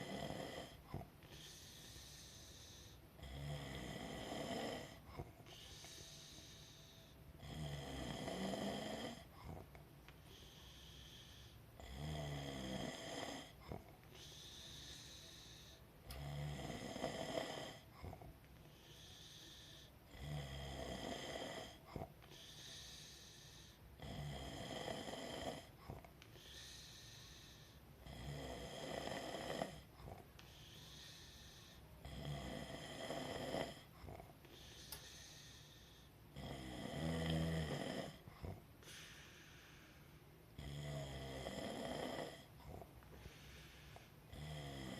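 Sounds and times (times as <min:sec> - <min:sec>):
person snoring: 0:00.0 - 0:44.9
quiet breathing: 0:00.0 - 0:44.9.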